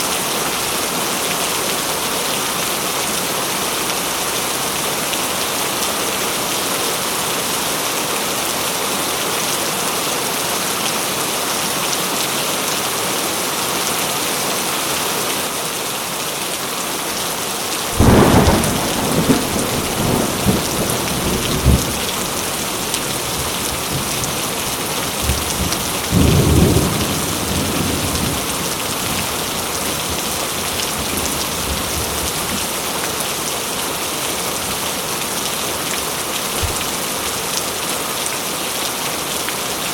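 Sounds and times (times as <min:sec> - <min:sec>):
heavy rain falling: 0:00.0 - 0:39.9
thunder crack and rumble: 0:18.0 - 0:24.4.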